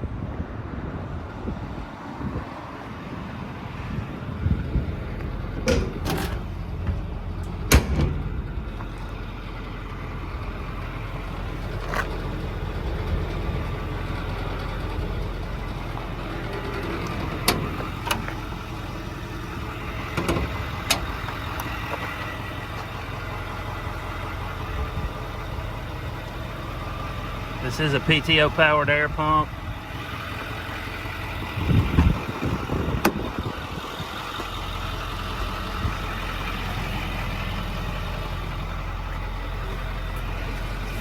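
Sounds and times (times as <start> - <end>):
diesel truck engine idling: 0.0 - 41.0
metal clunks and clicks: 5.2 - 8.3, 16.7 - 18.4, 20.1 - 21.7.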